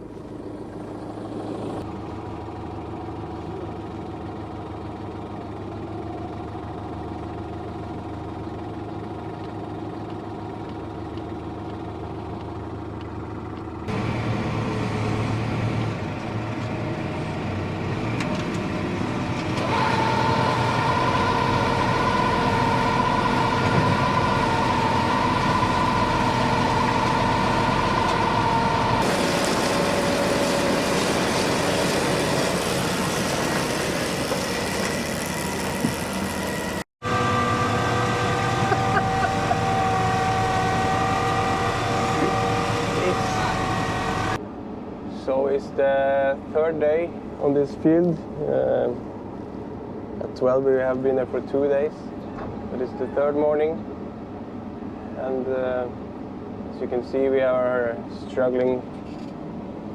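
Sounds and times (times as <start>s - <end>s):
tractor engine running: 0.0s - 44.4s
machinery noise: 13.9s - 44.4s
high-pitched whine: 19.6s - 44.4s.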